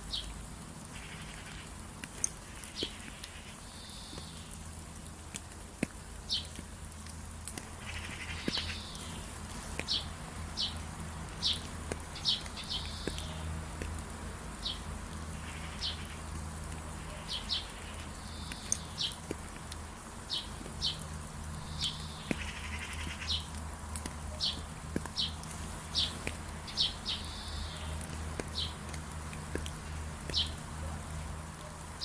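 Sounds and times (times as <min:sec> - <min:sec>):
faint high hiss: 0:00.0 - 0:32.0
bird chirping: 0:07.8 - 0:10.8, 0:11.4 - 0:13.5, 0:17.0 - 0:19.2, 0:20.3 - 0:23.5, 0:24.3 - 0:28.9, 0:29.6 - 0:30.6
birds warbling: 0:20.3 - 0:23.5, 0:24.4 - 0:30.6.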